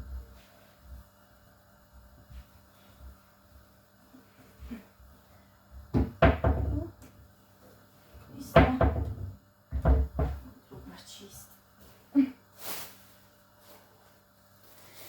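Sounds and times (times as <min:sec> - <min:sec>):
knocking and clatter from kitchen work: 0:05.9 - 0:07.2, 0:08.2 - 0:11.0.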